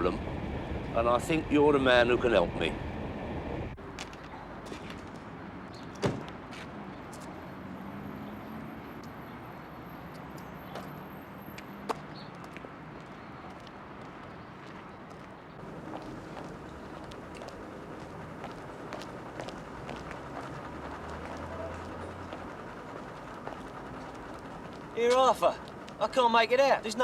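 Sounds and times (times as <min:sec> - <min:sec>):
low background rumble: 0:00.0 - 0:03.8, 0:15.6 - 0:27.0.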